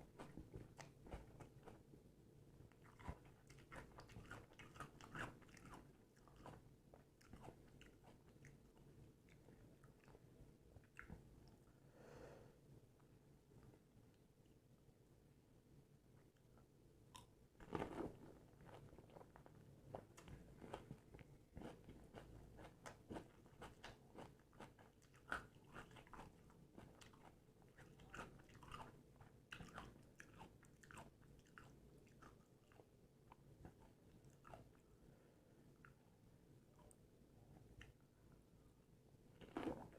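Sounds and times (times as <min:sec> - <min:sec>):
crunching and chewing crisp food: 0:00.0 - 0:01.9, 0:02.7 - 0:11.6, 0:17.1 - 0:35.0, 0:39.4 - 0:39.9.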